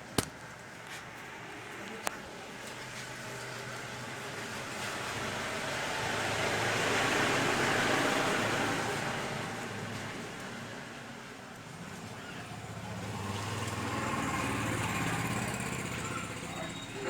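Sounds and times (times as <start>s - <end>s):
vehicle passing by: 12.6s - 17.0s.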